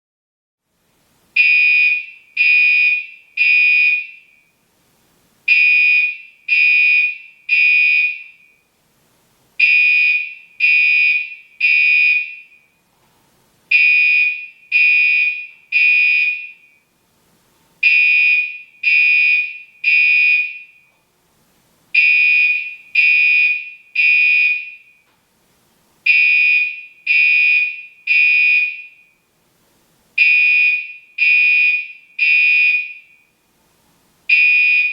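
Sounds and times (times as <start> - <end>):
fire alarm horn blasts: 1.4 - 4.5, 5.5 - 8.7, 9.6 - 12.8, 13.7 - 16.9, 17.8 - 20.9, 22.0 - 25.0, 26.1 - 29.2, 30.2 - 33.4, 34.3 - 34.9.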